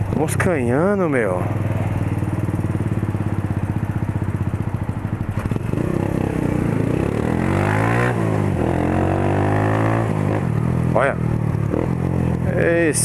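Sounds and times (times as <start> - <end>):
motorcycle engine accelerating: 0.0 - 13.0.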